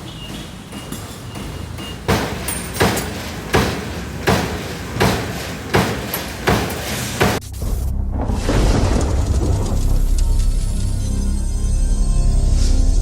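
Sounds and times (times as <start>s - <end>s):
strikes on steel: 1.0s - 7.4s.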